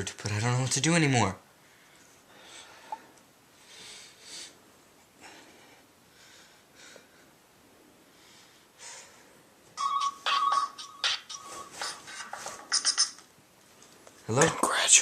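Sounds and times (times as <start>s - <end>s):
man breathing heavily: 1.6s - 9.5s.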